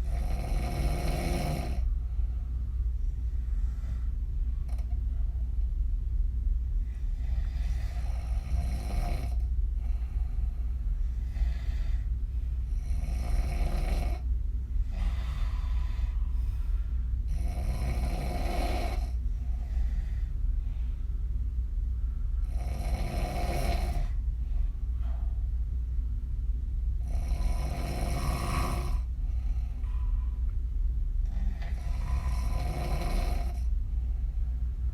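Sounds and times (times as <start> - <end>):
woman snoring: 0.0 - 1.9, 7.2 - 9.4, 12.7 - 14.2, 17.3 - 19.9, 22.4 - 24.2, 27.0 - 29.1, 31.2 - 33.7
steady low hum: 0.0 - 34.9.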